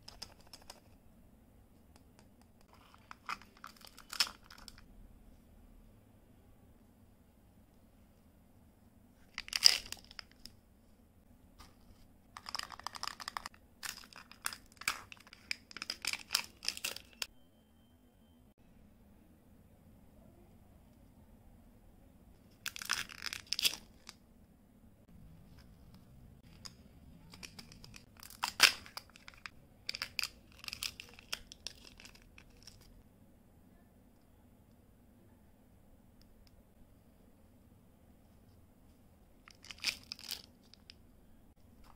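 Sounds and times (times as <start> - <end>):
candy wrappers crinkling: 2.6 - 4.9, 9.3 - 10.5, 12.3 - 17.3, 22.6 - 24.2, 26.4 - 32.9, 39.4 - 41.0.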